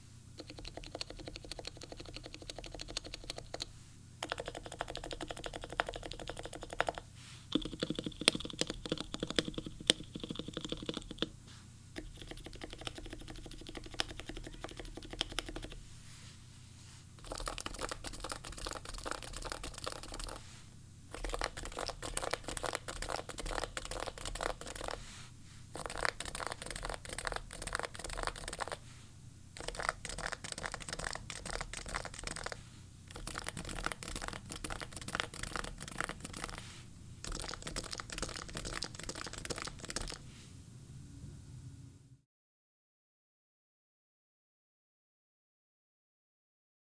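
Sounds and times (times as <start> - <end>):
muted keyboard typing clacks: 0.4 - 11.3, 12.0 - 15.8, 17.2 - 20.4, 21.1 - 25.0, 25.8 - 28.8, 29.6 - 36.6, 37.2 - 40.2.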